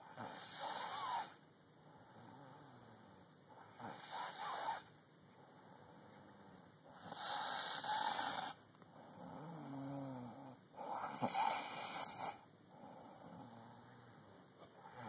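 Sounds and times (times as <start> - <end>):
woman snoring: 0.1 - 1.4, 7.0 - 8.6, 9.2 - 14.2.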